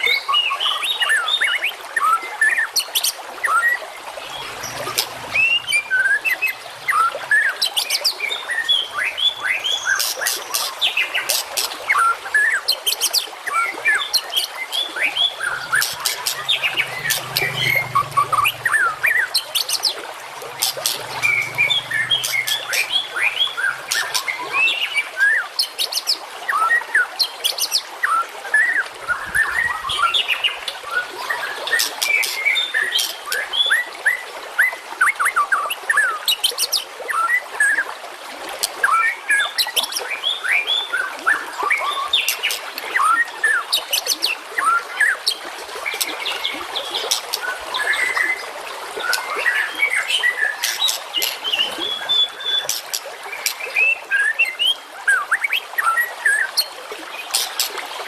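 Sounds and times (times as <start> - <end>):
songbirds chirping and whistling: 2.4 - 26.8, 39.3 - 57.8.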